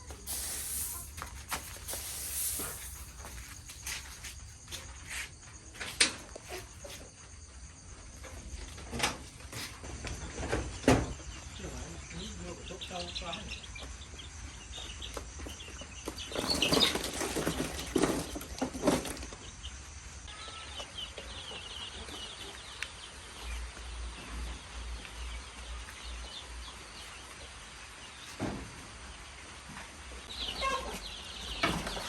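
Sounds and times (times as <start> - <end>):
chicks cheeping: 10.3 - 28.4, 30.2 - 32.0
chickens flapping wings: 16.2 - 19.4.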